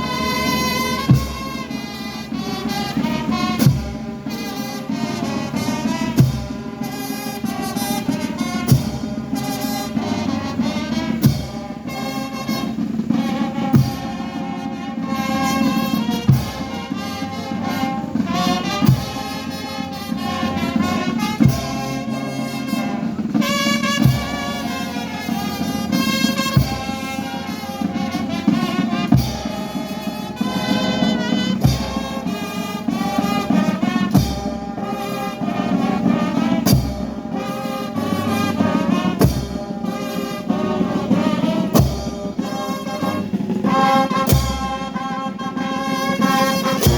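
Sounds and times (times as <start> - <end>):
slow brass melody: 0.0 - 46.9
deep drum beat: 23.1 - 34.8, 46.5 - 46.9.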